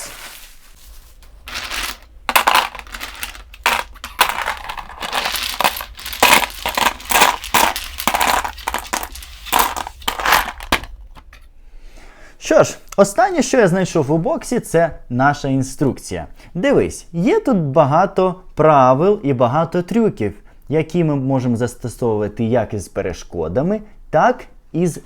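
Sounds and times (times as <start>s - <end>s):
toy dominoes clattering: 1.5s - 10.9s.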